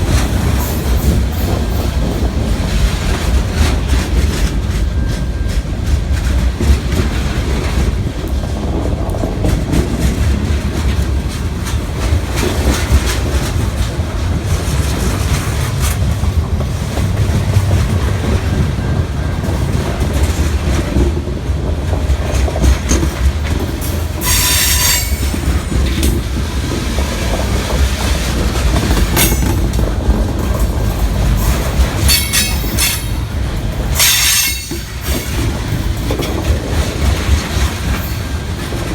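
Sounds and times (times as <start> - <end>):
clacking train wheels: 0.0 - 38.9
freight train rolling past: 0.0 - 38.9
high-pitched wheel squeals: 24.2 - 25.6.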